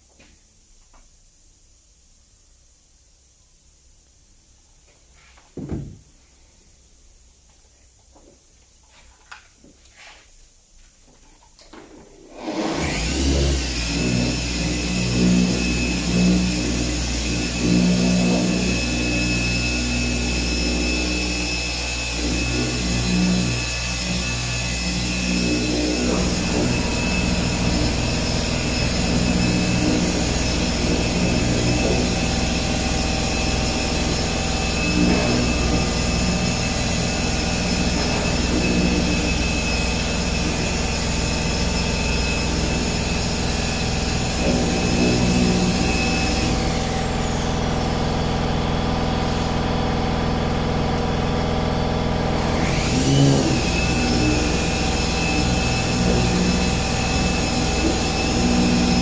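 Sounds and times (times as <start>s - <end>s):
car polisher whining: 12.2s - 59.0s.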